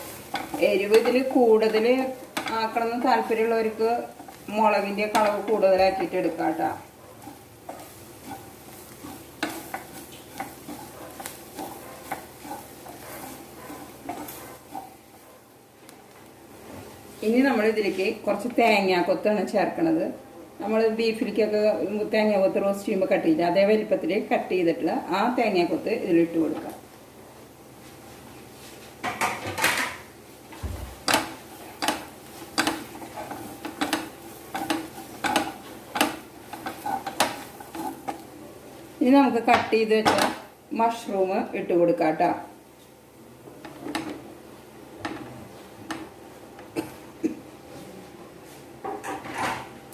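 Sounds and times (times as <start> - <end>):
spatula scraping a pan: 0.0 - 15.3, 30.9 - 38.2
onions sizzling in oil: 0.0 - 18.7, 30.1 - 42.6.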